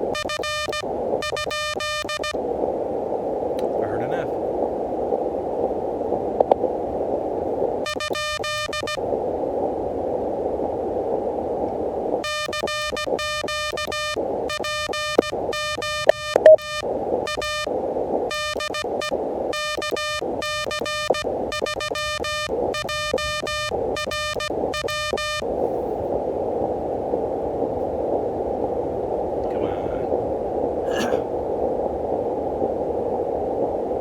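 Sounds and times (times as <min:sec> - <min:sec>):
morse code tone: 0:00.2 - 0:02.4, 0:07.9 - 0:09.0, 0:12.2 - 0:17.7, 0:18.3 - 0:25.4
radio hiss: 0:03.6 - 0:04.4, 0:29.4 - 0:30.2.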